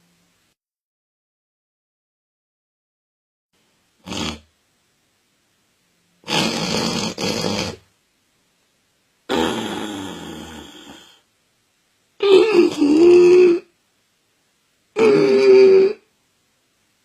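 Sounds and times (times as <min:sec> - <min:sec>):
man snoring: 0:04.0 - 0:04.5, 0:06.2 - 0:07.8, 0:09.3 - 0:11.2, 0:12.2 - 0:13.7, 0:15.0 - 0:16.0.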